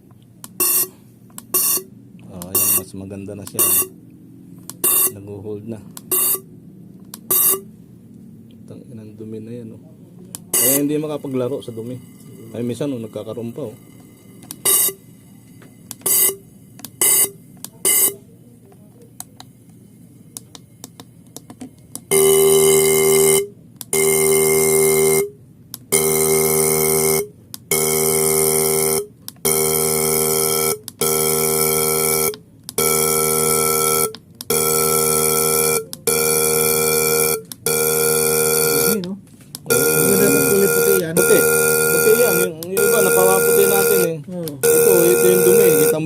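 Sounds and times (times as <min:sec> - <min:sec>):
fuel injectors buzzing: 0:00.4 - 0:05.3, 0:05.9 - 0:07.8, 0:10.3 - 0:18.2, 0:20.4 - 0:46.0.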